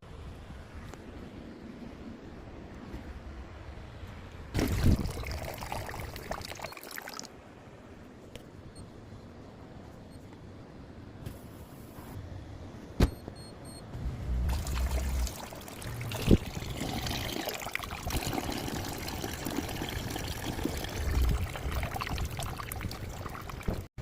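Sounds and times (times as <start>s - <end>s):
water pouring and trickling: 4.6s - 7.3s, 14.5s - 23.9s
low rumbling: 13.8s - 17.4s.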